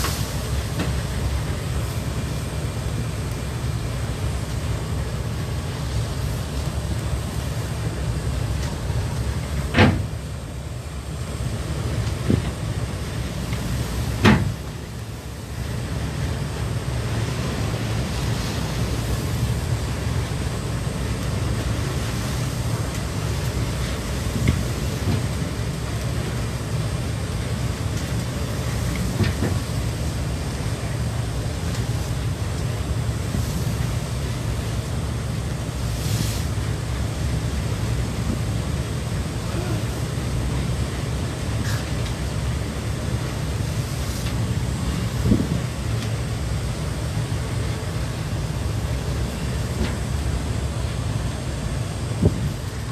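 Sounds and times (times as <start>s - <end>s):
boat low rumble: 0.0s - 52.9s
rushing water: 0.0s - 52.9s
wind: 0.0s - 52.9s
thump: 9.7s - 10.1s, 14.2s - 14.6s
wave slamming against hull: 9.7s - 10.2s, 13.9s - 14.6s.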